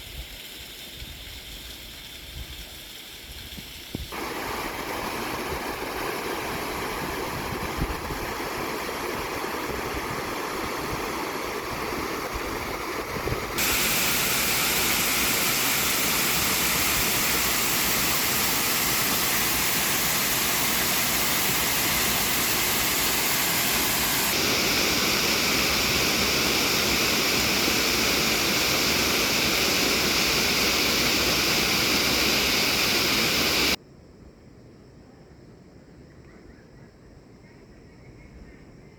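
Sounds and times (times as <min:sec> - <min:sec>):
stream rushing: 0:04.1 - 0:33.8.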